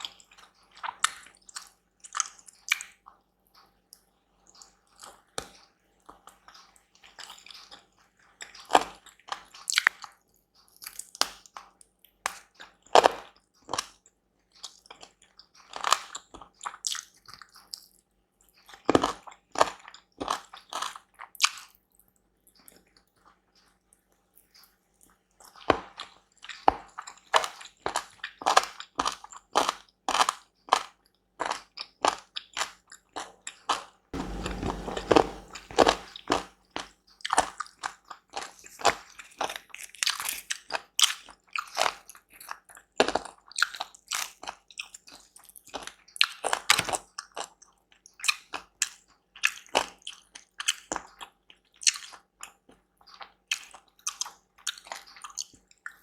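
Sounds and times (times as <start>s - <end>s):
brief low rumble: 34.2s - 36.1s
person chewing crunchy food: 49.4s - 56.0s.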